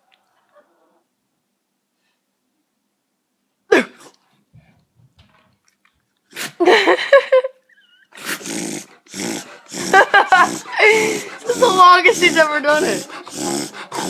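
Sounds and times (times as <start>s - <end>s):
dog sneezing: 6.3s - 6.7s, 8.2s - 14.0s
dog snorting: 8.2s - 14.0s.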